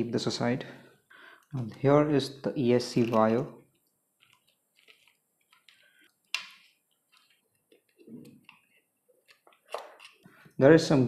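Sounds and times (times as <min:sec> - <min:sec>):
small plastic parts clicking: 0:02.9 - 0:10.3.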